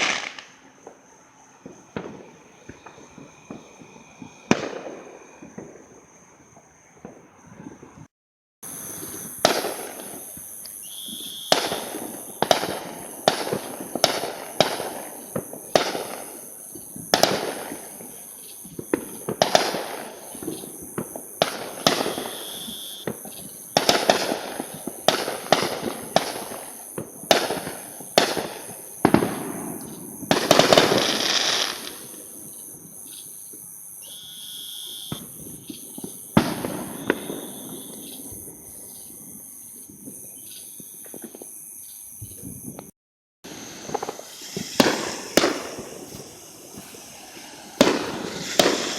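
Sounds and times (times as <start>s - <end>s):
fireworks crackling burst: 0.0s - 5.9s, 8.6s - 33.2s, 34.0s - 41.6s, 43.4s - 48.9s
fireworks banging with echo: 0.0s - 6.1s, 8.6s - 32.6s, 34.9s - 38.6s, 43.4s - 48.9s.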